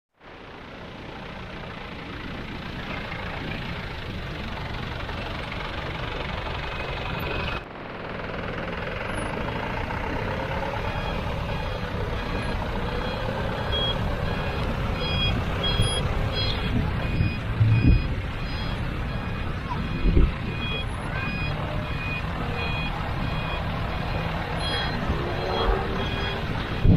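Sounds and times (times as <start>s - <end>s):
diesel machinery running: 0.2s - 26.9s
reversing alarm beeping: 6.3s - 7.6s, 10.2s - 26.9s.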